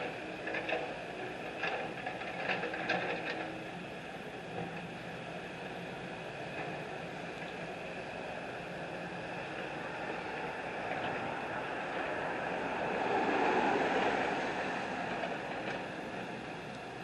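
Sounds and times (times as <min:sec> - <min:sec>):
vehicle passing on street: 0:09.0 - 0:17.0.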